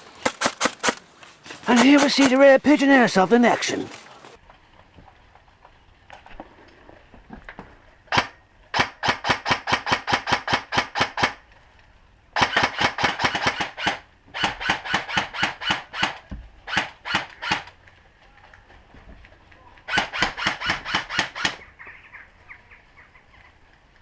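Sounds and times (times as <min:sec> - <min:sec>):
airsoft gun firing sharp cracks: 0:00.2 - 0:01.0, 0:01.7 - 0:02.4, 0:08.1 - 0:11.4, 0:12.4 - 0:17.8, 0:19.9 - 0:21.6.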